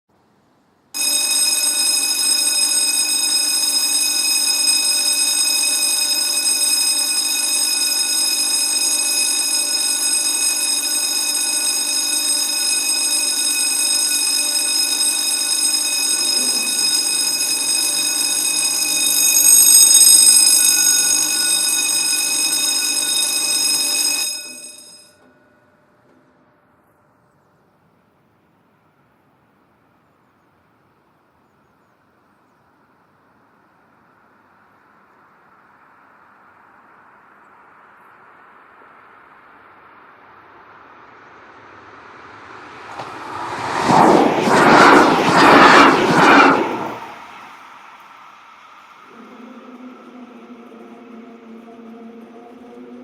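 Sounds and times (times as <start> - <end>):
railroad crossing bell ringing: 1.0 - 26.4, 42.2 - 47.6.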